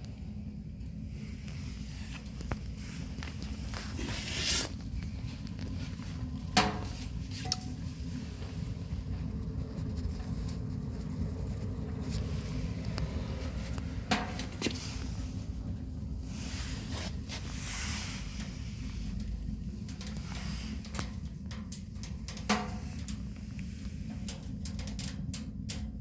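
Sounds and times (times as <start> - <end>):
low rumble: 0.0 - 25.9
sharp knocks and clinks: 6.7 - 7.8.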